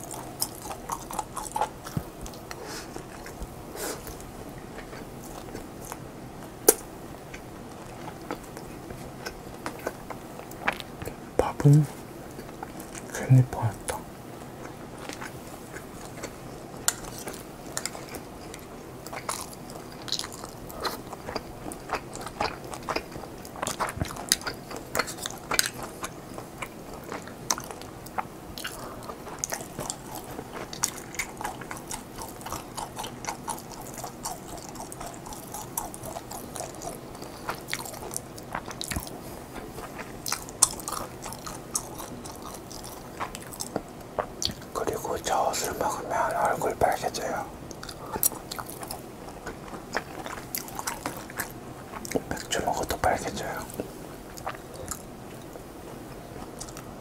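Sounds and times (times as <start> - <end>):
chewing food: 0.0 - 57.0.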